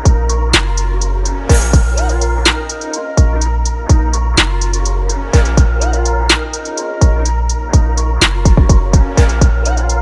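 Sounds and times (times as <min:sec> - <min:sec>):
electronic beat music: 0:00.0 - 0:10.0.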